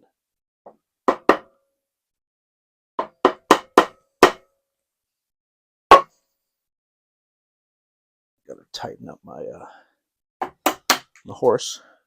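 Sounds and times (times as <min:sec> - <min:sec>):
wooden mallet striking a chisel: 0:00.7 - 0:01.6, 0:03.0 - 0:04.5, 0:05.9 - 0:06.1, 0:10.4 - 0:11.2.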